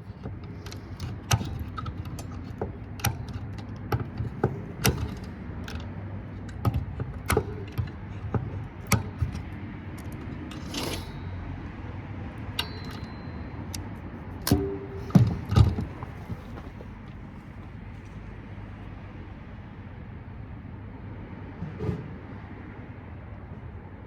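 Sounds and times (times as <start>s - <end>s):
hand tools clicking and knocking: 0.0s - 11.7s, 12.4s - 17.3s
low steady hum: 0.0s - 18.4s.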